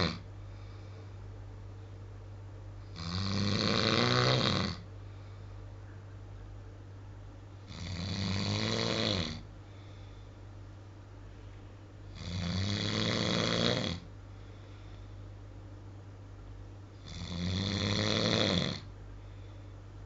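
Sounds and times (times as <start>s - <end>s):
man snoring: 0.0s - 0.2s, 2.9s - 4.9s, 7.7s - 9.5s, 12.1s - 14.1s, 17.0s - 18.9s
low hum: 0.0s - 3.0s, 4.8s - 7.7s, 9.4s - 12.2s, 14.0s - 17.1s.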